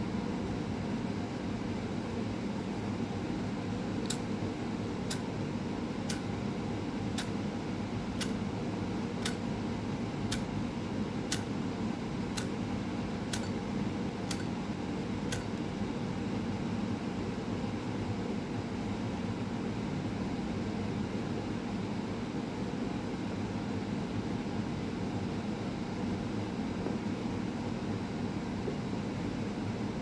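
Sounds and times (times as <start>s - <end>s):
low room hum: 0.0s - 30.0s
light sharp ticking: 4.0s - 4.4s, 5.1s - 5.3s, 6.1s - 6.3s, 7.2s - 7.5s, 8.2s - 8.5s, 9.2s - 9.5s, 10.3s - 10.7s, 11.3s - 11.6s, 12.3s - 13.7s, 14.3s - 14.6s, 15.3s - 15.7s.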